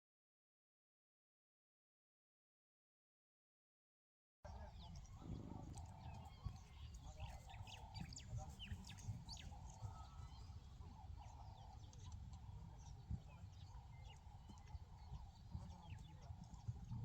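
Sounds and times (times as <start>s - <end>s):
small birds chirping: 4.5s - 17.0s.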